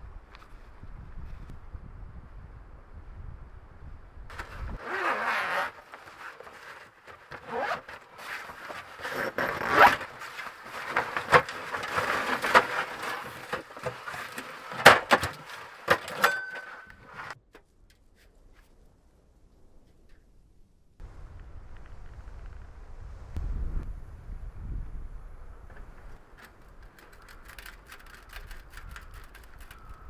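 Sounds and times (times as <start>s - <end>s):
gear rustling and scraping: 4.3s - 17.4s, 25.7s - 30.0s.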